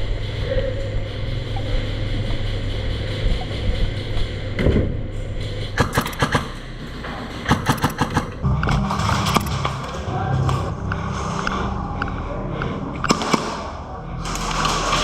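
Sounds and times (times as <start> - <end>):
airsoft rifle rapid shots: 5.8 - 6.6, 7.5 - 8.4.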